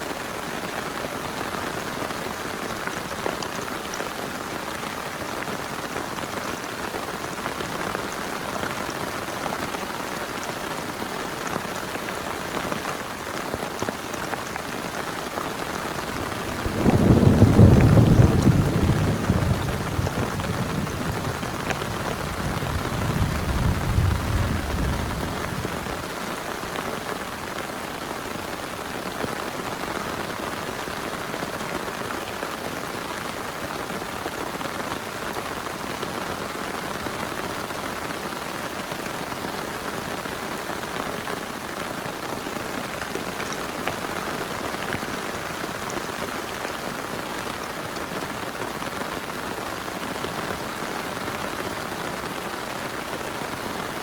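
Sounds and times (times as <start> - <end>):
heavy rain falling: 0.0 - 54.0
low rumble of thunder: 16.0 - 26.1.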